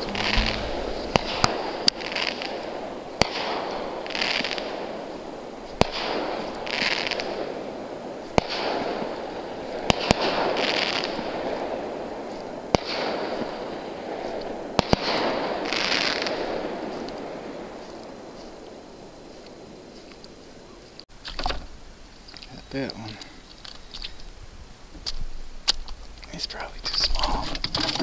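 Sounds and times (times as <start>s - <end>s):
fireworks banging: 0.0s - 20.7s
fireworks crackling: 0.0s - 28.0s.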